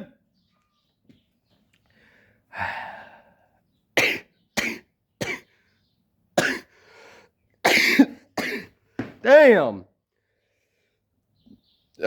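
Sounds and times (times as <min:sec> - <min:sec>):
man coughing: 0:04.0 - 0:05.4, 0:06.4 - 0:06.7, 0:07.6 - 0:08.8
man talking: 0:09.2 - 0:09.8.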